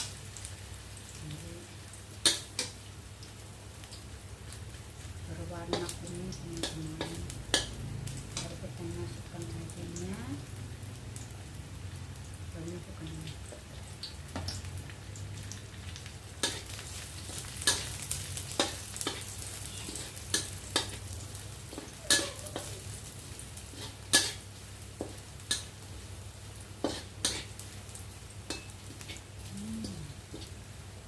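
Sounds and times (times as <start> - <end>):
light sizzle: 0.0 - 31.0
metal spatula scraping a pan: 16.4 - 21.0, 21.7 - 22.7, 23.7 - 24.4, 26.8 - 27.5.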